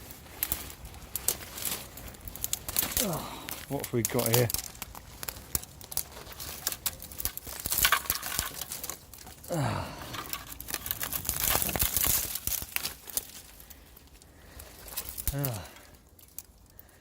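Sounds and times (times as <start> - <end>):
footsteps through dry undergrowth: 0.0 - 9.4.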